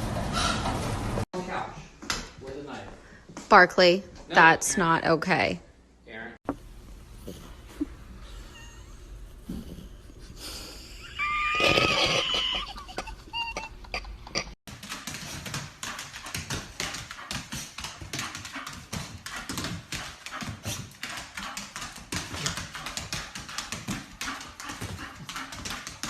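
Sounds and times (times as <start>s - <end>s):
dog clicks and taps: 14.7s - 26.0s.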